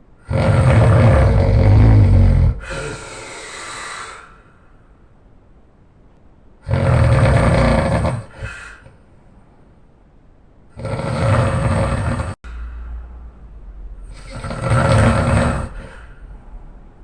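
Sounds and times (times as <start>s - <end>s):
man snoring loudly: 0.2s - 4.0s, 6.6s - 8.6s, 10.8s - 12.4s, 14.0s - 16.1s
quiet breathing: 2.2s - 5.2s, 6.8s - 9.7s, 11.0s - 17.0s.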